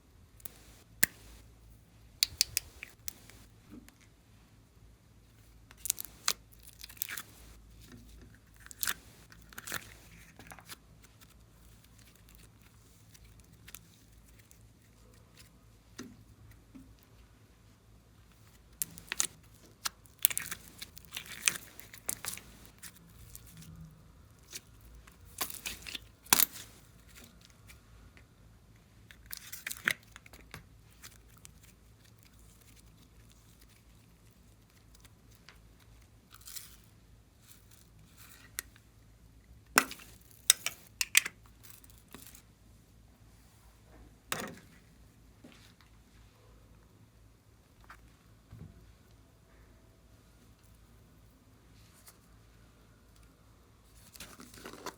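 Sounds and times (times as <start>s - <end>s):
slime clicking and popping: 2.2s - 3.4s.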